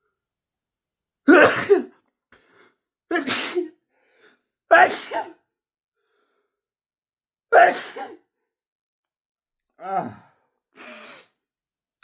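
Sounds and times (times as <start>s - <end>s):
man sneezing: 1.3s - 2.0s, 3.1s - 3.7s, 4.7s - 5.4s, 7.5s - 8.2s.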